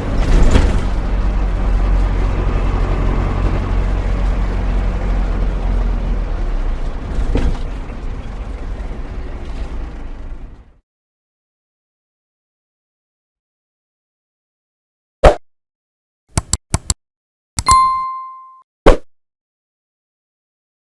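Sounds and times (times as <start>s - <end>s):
van engine humming: 0.0s - 10.8s
sharp mechanical knock: 16.3s - 17.0s.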